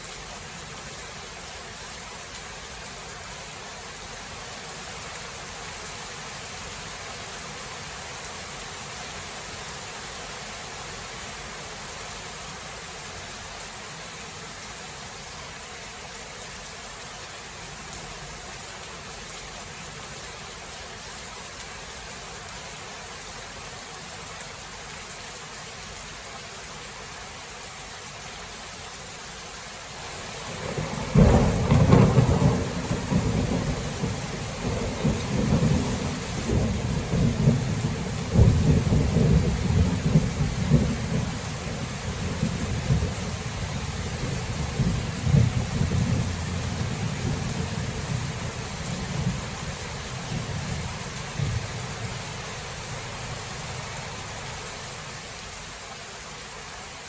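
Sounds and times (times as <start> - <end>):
heavy rain hissing: 0.0 - 57.0
low rumble of thunder: 30.3 - 53.5.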